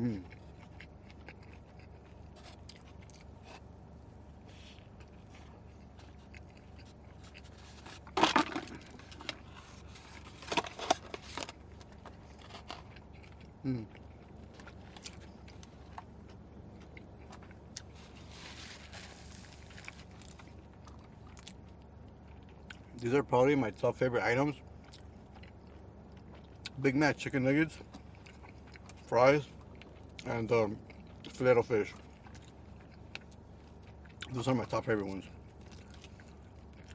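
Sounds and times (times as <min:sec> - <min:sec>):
person chewing food: 0:00.0 - 0:23.0, 0:24.6 - 0:26.8, 0:27.8 - 0:34.4, 0:35.3 - 0:36.9
wrapper crinkling: 0:17.8 - 0:20.4.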